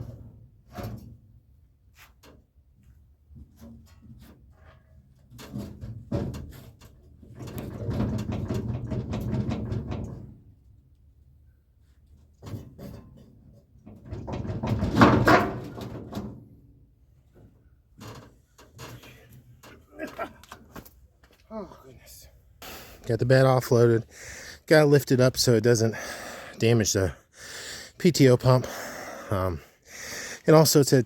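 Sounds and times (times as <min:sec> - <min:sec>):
metal knocks and clanks: 0:05.3 - 0:10.4, 0:12.4 - 0:16.4.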